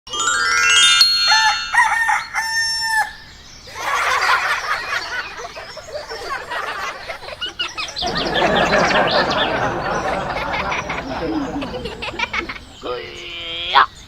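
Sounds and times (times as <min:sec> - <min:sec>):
rooster crowing: 0:01.3 - 0:03.2
small bird calls and clucking: 0:02.4 - 0:14.0.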